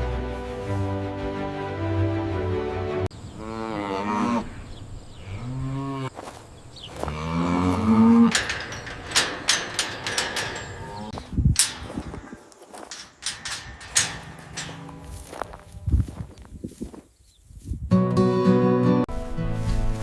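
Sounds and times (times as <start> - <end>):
background music: 0.0 - 3.1, 17.9 - 20.0
cow mooing: 3.4 - 4.6, 5.2 - 6.1, 7.0 - 11.2.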